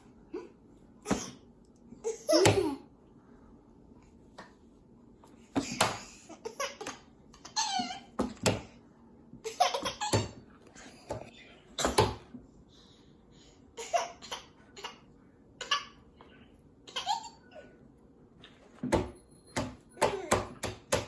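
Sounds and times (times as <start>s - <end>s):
baby laughing and giggling: 5.7s - 8.1s, 9.4s - 10.4s, 16.8s - 17.6s.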